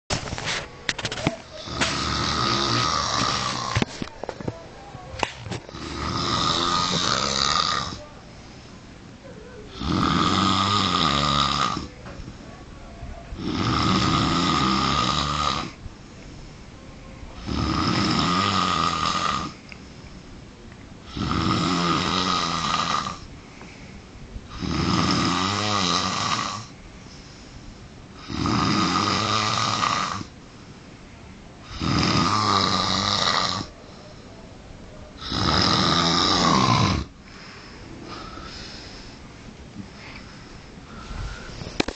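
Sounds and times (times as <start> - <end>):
man snoring: 1.6 - 3.9, 5.7 - 8.1, 9.7 - 11.9, 13.4 - 15.8, 17.4 - 19.6, 21.0 - 23.3, 24.5 - 26.8, 28.2 - 30.3, 31.6 - 33.7, 35.2 - 37.1.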